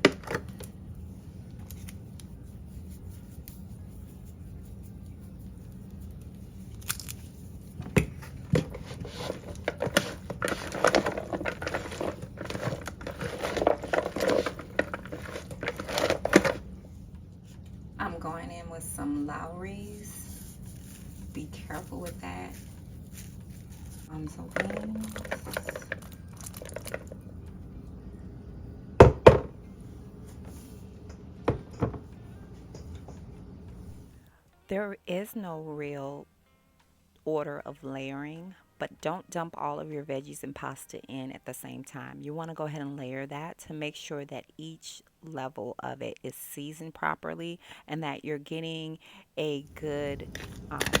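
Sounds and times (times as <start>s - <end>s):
wet rustling of salad: 8.7s - 16.7s, 20.2s - 27.3s.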